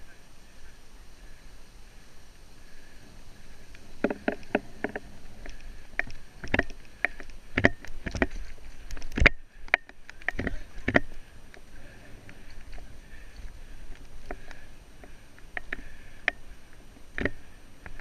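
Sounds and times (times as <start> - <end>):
sharp irregular knocks and clacks: 4.0 - 11.2, 14.2 - 16.4.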